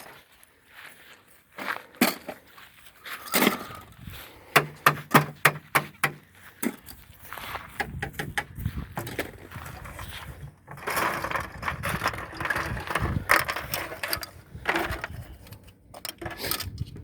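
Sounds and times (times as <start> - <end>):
plastic shotgun hulls clattering: 10.7 - 17.0.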